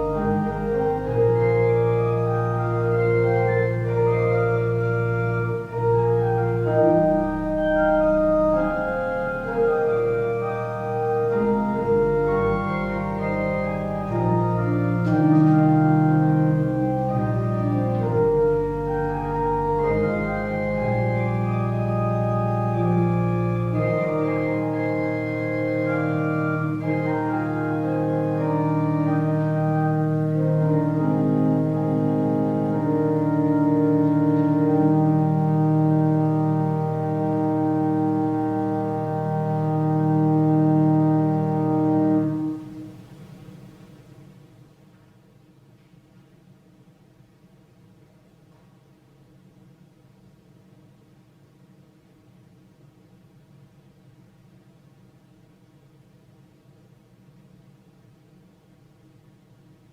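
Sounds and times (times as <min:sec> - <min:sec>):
pipe organ chords: 0:00.0 - 0:44.2.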